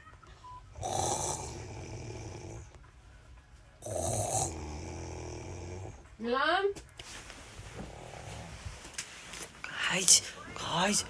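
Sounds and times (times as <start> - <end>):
man snoring loudly: 0.8 - 2.7, 3.8 - 6.1.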